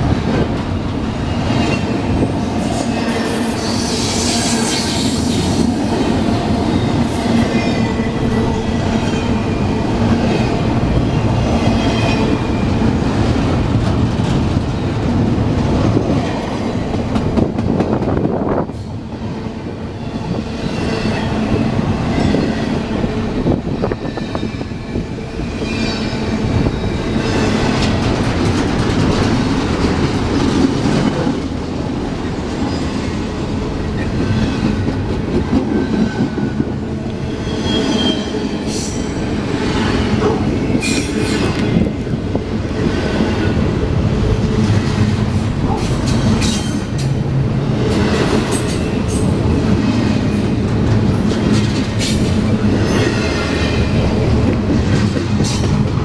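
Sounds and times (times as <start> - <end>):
train wheels clattering on rails: 0.0 - 19.0, 20.1 - 56.0
high-pitched flange squeal: 2.5 - 10.5, 37.2 - 39.3.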